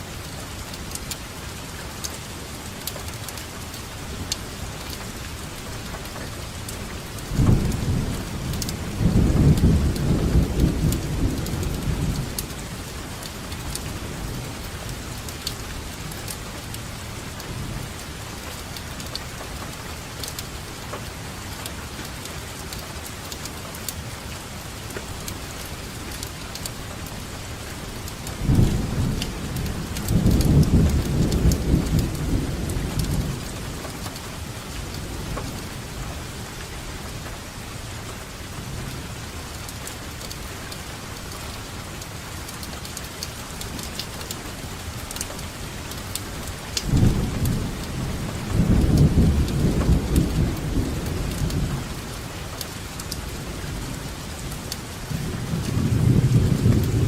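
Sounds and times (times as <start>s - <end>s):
steady rainfall: 0.0s - 57.0s
raindrop ticks: 0.2s - 37.4s, 38.0s - 57.0s
thunder rumbling: 7.2s - 15.1s, 28.4s - 36.5s, 44.9s - 57.0s.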